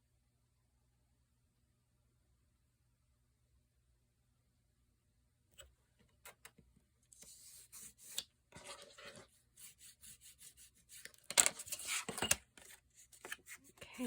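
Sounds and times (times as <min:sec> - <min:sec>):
paper and card rubbing: 0:07.2 - 0:14.0.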